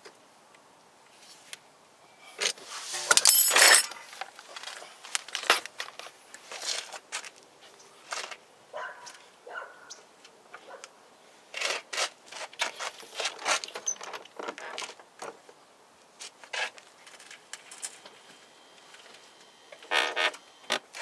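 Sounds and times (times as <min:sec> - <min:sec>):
wrench scraping and clinking metal: 0:02.2 - 0:04.8.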